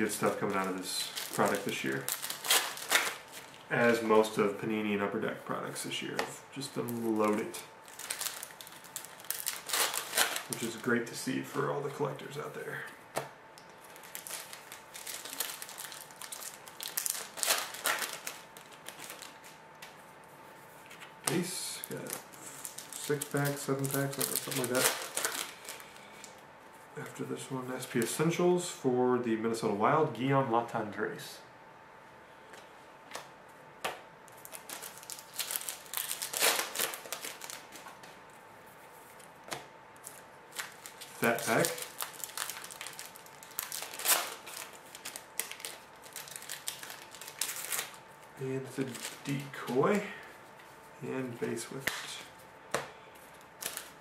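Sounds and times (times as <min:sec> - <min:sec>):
foil wrapper crinkling: 0:00.0 - 0:04.1, 0:06.8 - 0:11.6, 0:13.7 - 0:19.6, 0:21.0 - 0:26.4, 0:34.3 - 0:38.1, 0:40.0 - 0:50.2, 0:53.2 - 0:54.0.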